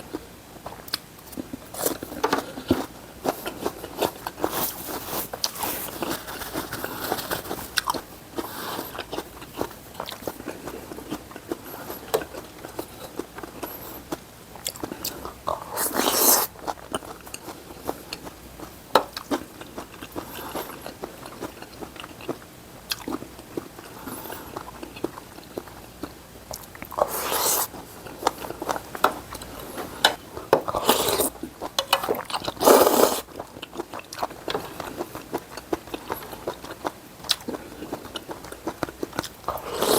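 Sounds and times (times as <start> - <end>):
chewing and mouth clicks: 0.0 - 39.9
loud noisy eating bursts: 14.8 - 18.2, 26.9 - 30.0, 30.7 - 31.6, 32.2 - 33.6, 35.9 - 39.9.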